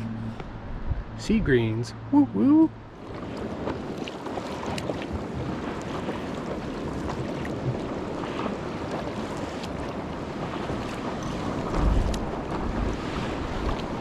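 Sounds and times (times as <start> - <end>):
water noise: 0.0 - 14.0
wind: 0.0 - 14.0
small splashes: 3.0 - 14.0.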